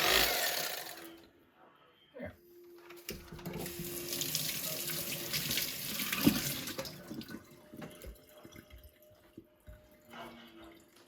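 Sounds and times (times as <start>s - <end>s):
tap running into sink: 3.3s - 8.2s.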